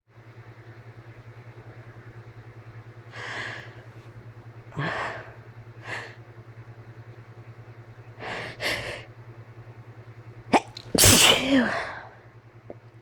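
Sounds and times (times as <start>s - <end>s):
steady low hum: 0.1s - 13.0s
person sneezing: 10.6s - 12.1s.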